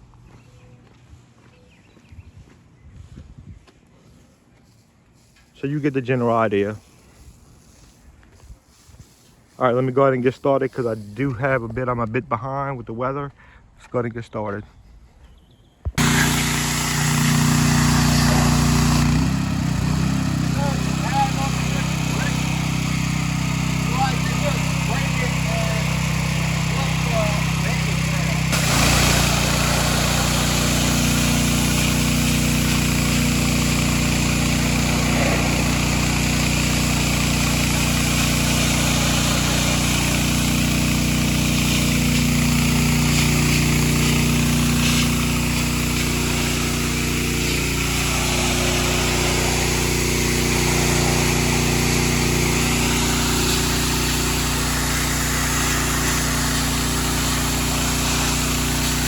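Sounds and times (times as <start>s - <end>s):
pressure washer running: 15.9s - 59.0s.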